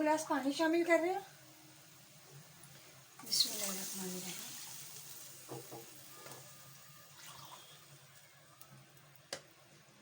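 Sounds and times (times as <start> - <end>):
water poured into a pot: 2.7 - 8.3.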